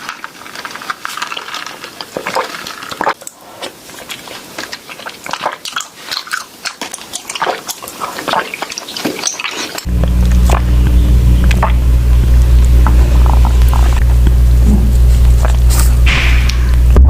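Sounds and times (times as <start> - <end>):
person chewing with wet smacks: 0.0 - 14.4, 15.0 - 16.0
loud low hum: 9.9 - 17.0.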